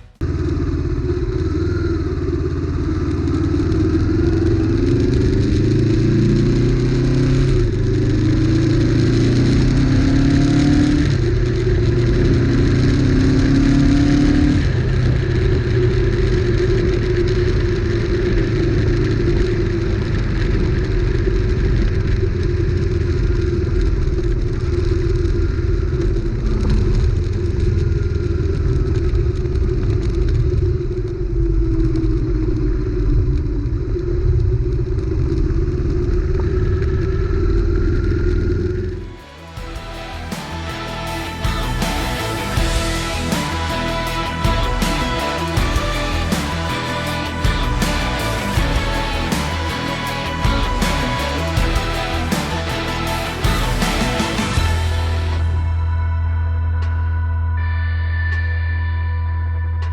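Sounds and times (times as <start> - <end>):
motorcycle engine revving: 0.0 - 21.2, 38.4 - 55.9.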